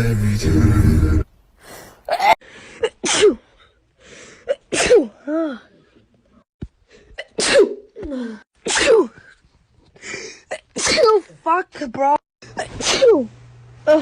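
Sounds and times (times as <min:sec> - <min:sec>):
quick in-breath: 0:01.6 - 0:02.8, 0:03.6 - 0:04.5
woman sneezing: 0:10.5 - 0:11.2, 0:12.6 - 0:13.3.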